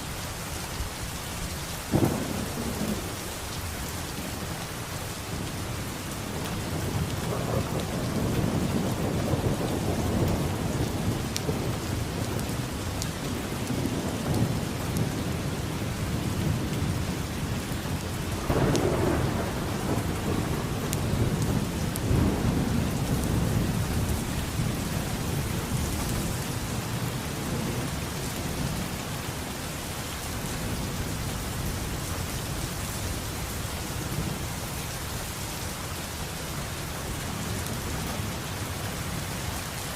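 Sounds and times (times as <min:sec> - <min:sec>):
steady rain falling: 0:00.0 - 0:39.9
rolling thunder: 0:01.9 - 0:03.2, 0:06.3 - 0:29.0.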